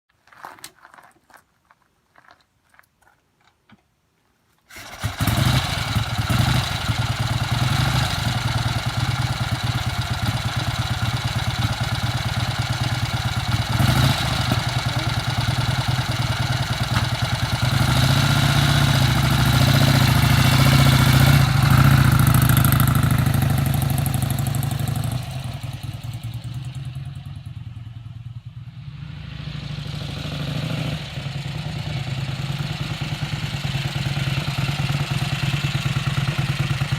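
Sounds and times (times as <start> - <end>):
motorcycle engine revving: 4.7 - 36.9.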